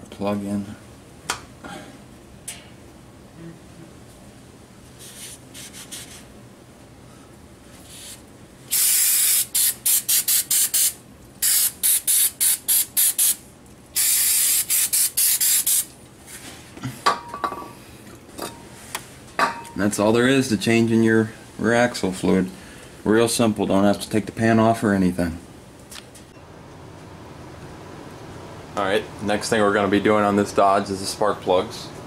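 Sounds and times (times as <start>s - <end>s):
spray hissing in squirts: 7.8s - 13.4s, 14.0s - 15.9s.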